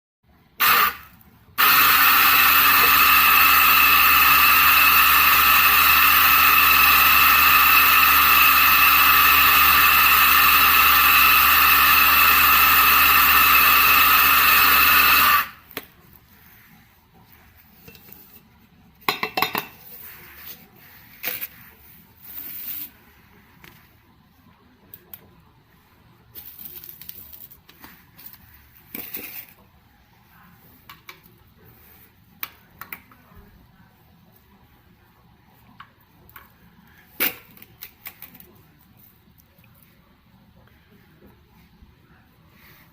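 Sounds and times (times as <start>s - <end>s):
electric coffee grinder running: 0.6s - 1.0s, 1.6s - 15.8s.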